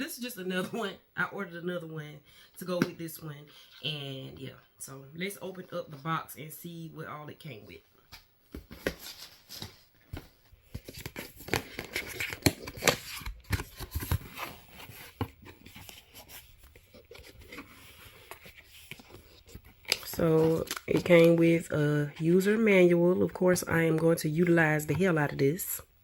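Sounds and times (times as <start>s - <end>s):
packaging rustling: 8.6s - 21.6s.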